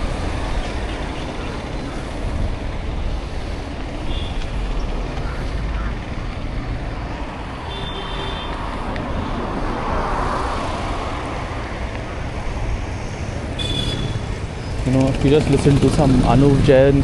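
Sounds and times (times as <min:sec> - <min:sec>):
wind rumble on microphone: 0:00.0 - 0:07.0
road traffic noise: 0:00.0 - 0:17.0.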